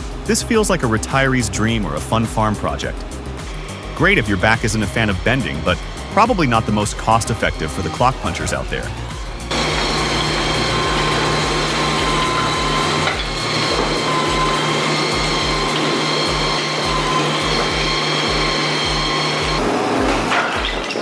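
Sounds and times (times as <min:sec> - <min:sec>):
low thumping: 0:00.0 - 0:15.7
wood-processing machine whining: 0:00.0 - 0:21.0.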